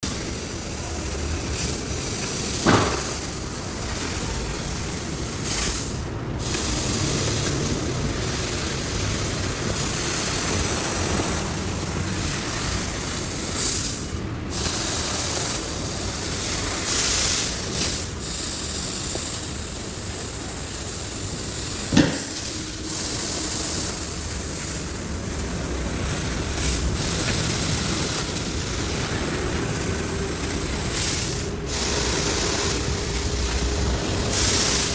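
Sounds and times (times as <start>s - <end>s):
hissing cnc machine noise: 0.0s - 34.9s
sharp knock: 2.6s - 3.2s, 21.9s - 22.4s.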